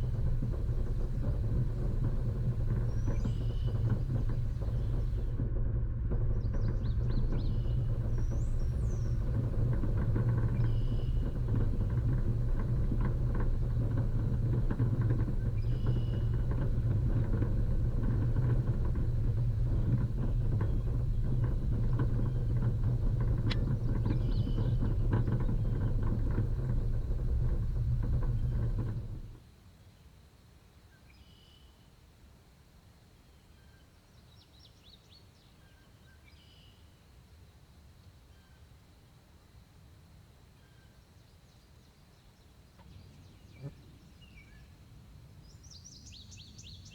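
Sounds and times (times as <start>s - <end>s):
knocks and rattles: 0.0s - 29.4s
offroad vehicle engine rumble: 0.0s - 29.4s.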